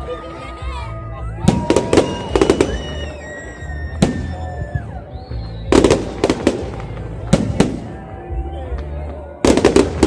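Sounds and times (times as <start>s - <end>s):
fireworks bangs: 1.4s - 3.1s, 5.6s - 8.1s, 9.4s - 10.0s.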